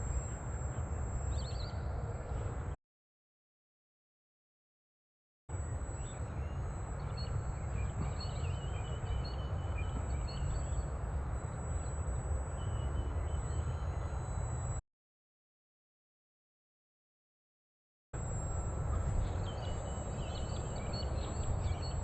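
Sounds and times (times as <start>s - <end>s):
birds chirping and singing: 6.0s - 10.9s, 18.9s - 22.0s.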